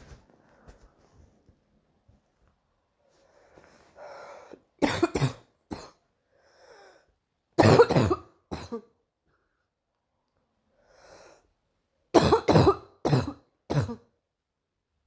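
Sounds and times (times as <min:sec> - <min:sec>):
girl breathing in: 0:03.2 - 0:04.6, 0:06.3 - 0:07.2, 0:10.8 - 0:11.5
girl's barking cough: 0:04.8 - 0:06.0, 0:07.6 - 0:08.9, 0:12.2 - 0:14.1.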